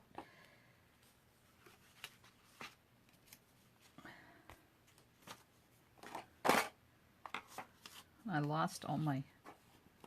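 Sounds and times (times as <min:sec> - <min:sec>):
paper rustling: 0:01.0 - 0:03.9, 0:04.9 - 0:05.6.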